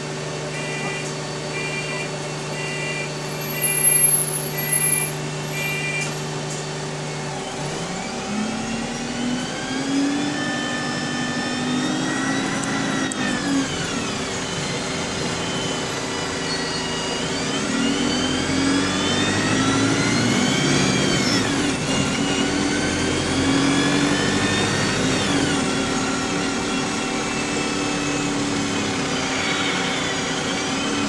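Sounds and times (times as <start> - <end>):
bus engine: 0.0 - 31.0
gearbox whine: 0.4 - 31.0
bus short beeps: 0.5 - 6.3.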